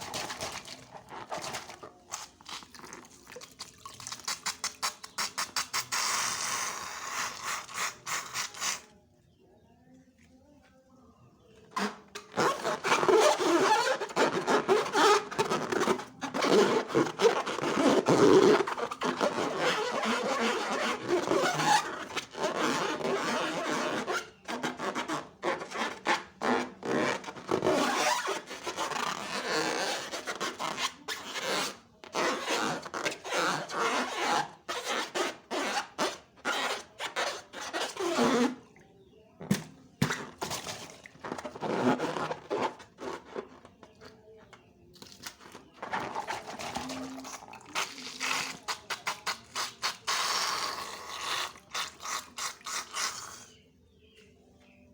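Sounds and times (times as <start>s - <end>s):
slime squelching by hand: 0.0s - 8.9s, 45.0s - 53.6s.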